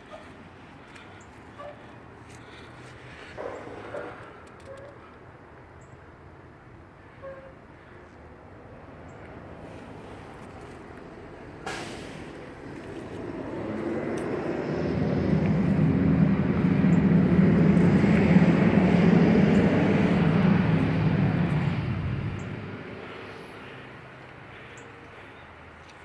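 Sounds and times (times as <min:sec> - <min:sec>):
passing engine: 0:08.5 - 0:26.0.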